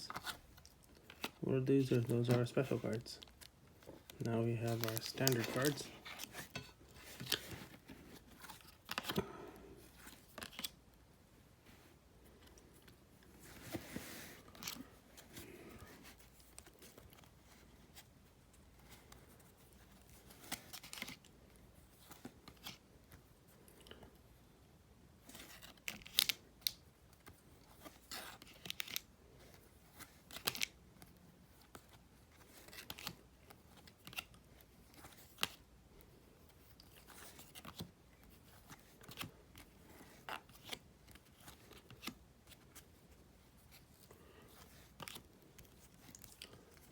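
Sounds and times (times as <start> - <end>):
paper wrapper rustling: 0.1 - 9.1.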